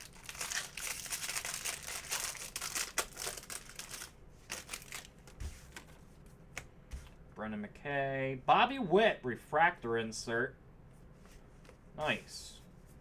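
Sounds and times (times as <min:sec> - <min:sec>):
wrapper crinkling: 0:00.0 - 0:05.8.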